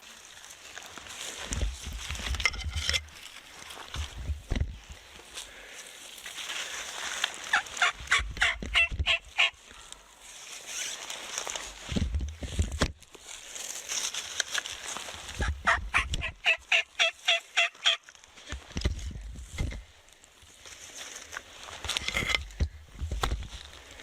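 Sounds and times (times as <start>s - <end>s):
turkey yelping: 7.5s - 9.6s, 15.4s - 18.0s.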